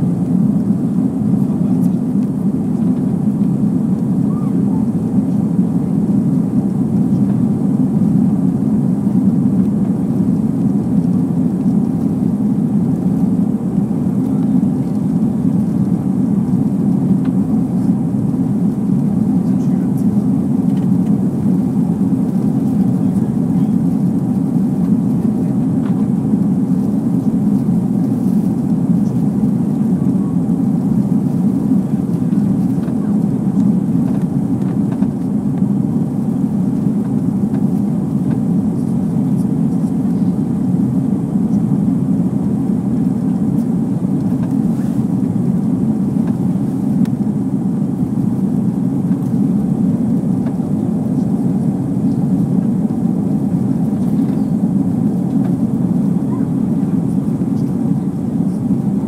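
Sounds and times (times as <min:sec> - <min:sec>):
jet engines rumbling: 0:00.0 - 0:59.0.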